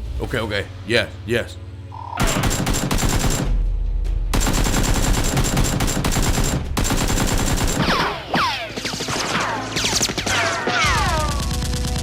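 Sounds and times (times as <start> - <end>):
automatic gunfire: 2.2 - 3.5, 4.4 - 8.0.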